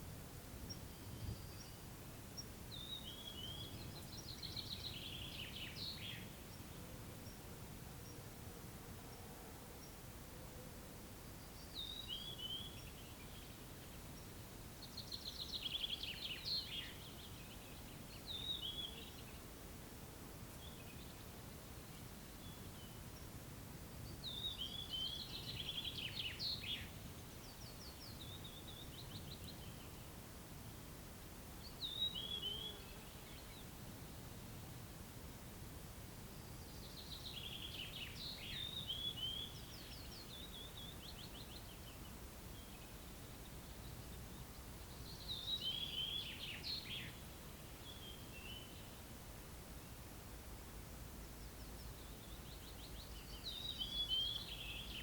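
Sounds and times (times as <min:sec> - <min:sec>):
songbird singing: 0:00.0 - 0:30.6, 0:31.4 - 0:34.8, 0:36.1 - 0:55.0.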